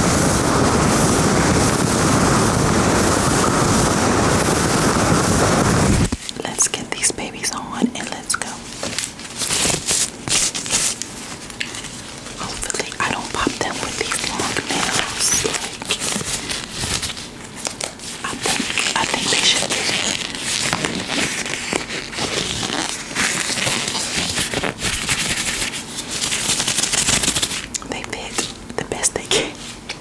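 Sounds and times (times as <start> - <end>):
latex gloves crinkling: 8.0 - 30.0.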